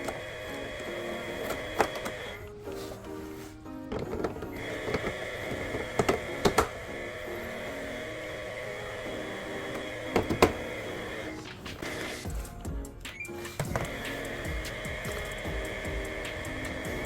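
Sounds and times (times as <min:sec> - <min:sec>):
steady machine whine: 0:00.0 - 0:02.6, 0:04.5 - 0:12.8, 0:13.6 - 0:17.0.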